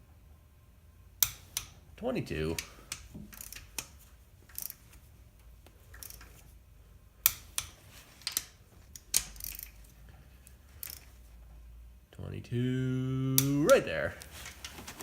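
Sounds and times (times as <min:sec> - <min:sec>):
torque wrench ratcheting: 0:02.6 - 0:03.9, 0:04.5 - 0:04.8, 0:05.9 - 0:06.3, 0:07.3 - 0:09.8, 0:10.8 - 0:11.1
torque wrench clicks: 0:02.6 - 0:04.8, 0:05.9 - 0:06.3, 0:07.2 - 0:09.8, 0:10.8 - 0:11.1.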